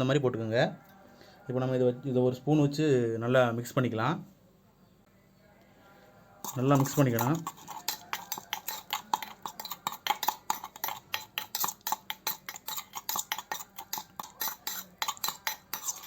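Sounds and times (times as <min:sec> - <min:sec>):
spoon clinking against container: 0:06.4 - 0:16.0.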